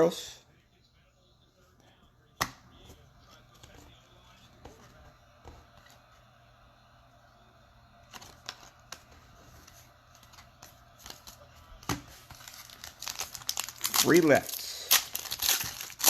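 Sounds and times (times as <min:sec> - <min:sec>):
cards handled and flipped: 0:08.0 - 0:16.0.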